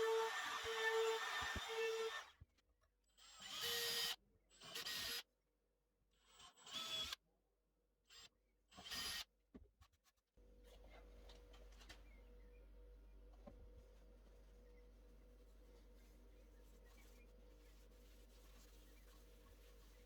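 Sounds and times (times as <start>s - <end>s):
faint steady hum: 10.4s - 20.0s.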